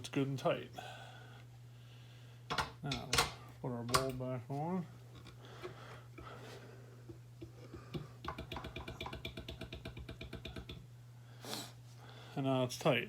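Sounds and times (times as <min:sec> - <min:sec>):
glass bowl knocking on mixer: 0:08.2 - 0:10.8.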